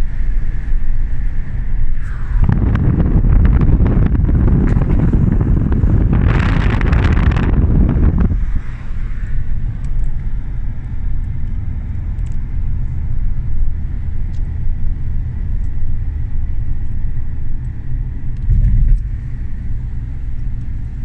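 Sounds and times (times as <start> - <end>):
car road and engine rumble: 0.0 - 21.0.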